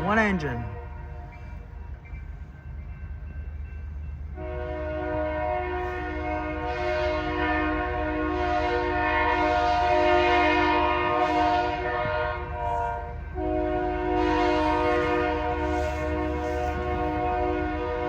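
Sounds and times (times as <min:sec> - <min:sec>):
passing train rumble: 0:00.0 - 0:18.0
locomotive air horn chord: 0:04.4 - 0:18.0.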